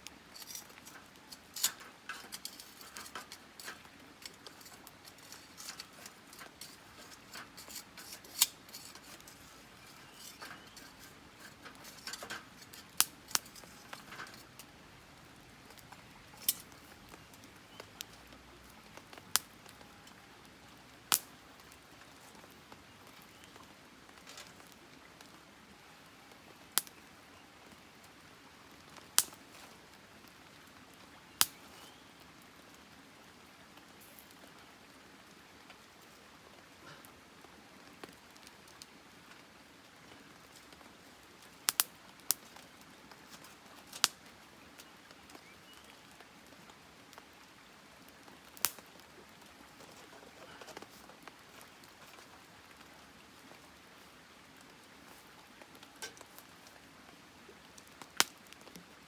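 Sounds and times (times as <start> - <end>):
burning wood popping: 0.0 - 20.2, 21.0 - 24.7, 28.9 - 29.8, 31.0 - 31.9, 41.4 - 45.8, 48.4 - 52.4, 55.1 - 56.8
campfire hiss: 0.0 - 59.0.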